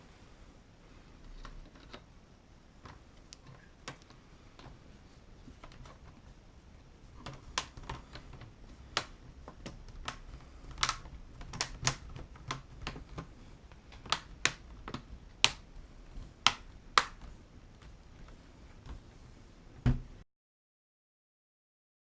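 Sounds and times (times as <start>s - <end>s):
plastic clips snapping: 7.2s - 15.8s, 16.4s - 17.9s.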